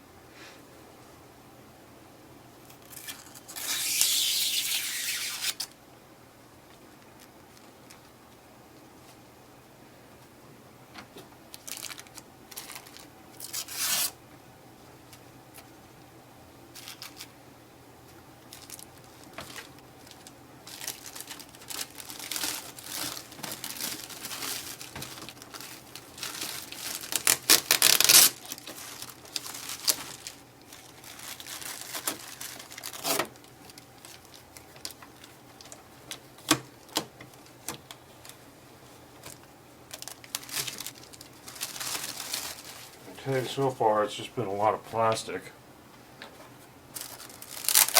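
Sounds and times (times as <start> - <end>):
packing tape peeling: 2.7 - 5.7, 11.6 - 14.2, 18.6 - 38.4, 39.2 - 43.0, 47.0 - 47.9
plastic film crinkling: 2.7 - 5.7, 11.5 - 14.2, 16.7 - 17.3, 18.4 - 38.4, 39.2 - 43.6, 46.9 - 47.9.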